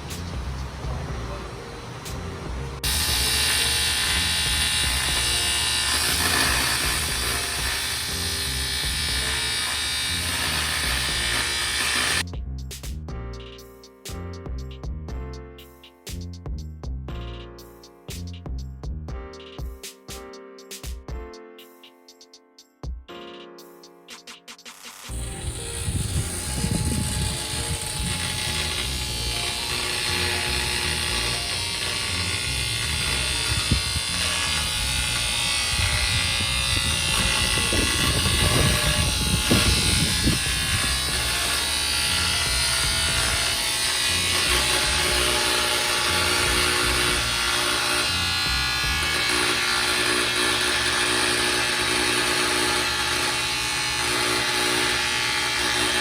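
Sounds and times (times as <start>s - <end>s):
steady buzzing hum: 2.8s - 12.2s, 25.1s - 56.0s.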